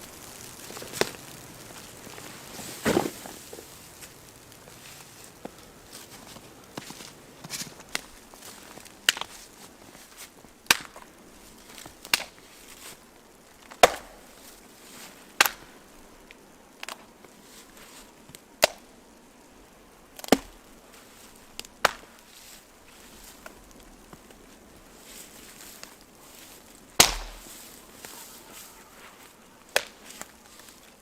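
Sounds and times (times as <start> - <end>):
wood chopping strikes: 2.8 - 3.6, 13.7 - 14.2, 20.2 - 20.5, 21.8 - 22.2, 27.0 - 27.6.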